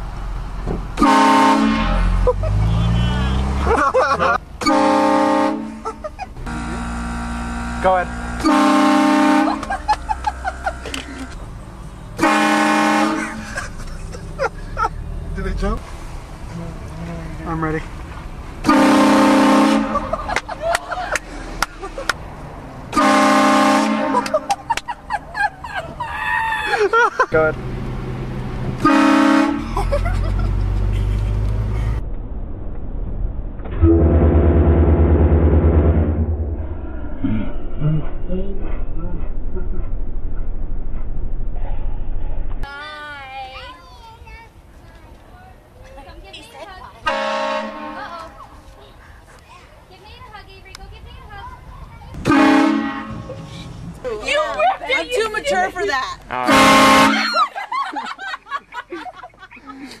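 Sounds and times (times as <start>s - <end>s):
vehicle engine humming: 0.0s - 57.7s
train horn blasting: 1.0s - 2.2s, 4.6s - 5.8s, 6.5s - 9.7s, 12.2s - 13.4s, 18.6s - 20.2s, 23.0s - 24.4s, 28.8s - 29.7s, 33.8s - 36.4s, 47.1s - 48.1s, 52.2s - 53.3s, 56.4s - 57.3s
loud steady low drone: 5.1s - 10.6s, 31.9s - 42.5s.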